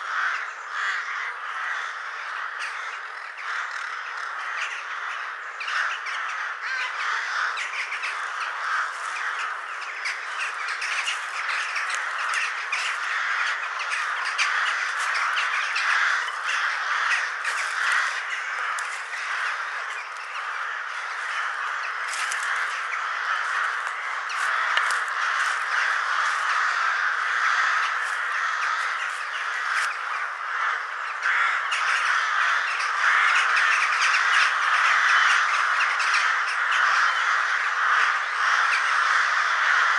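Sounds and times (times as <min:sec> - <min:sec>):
crows cawing and squawking: 0:00.0 - 0:39.9.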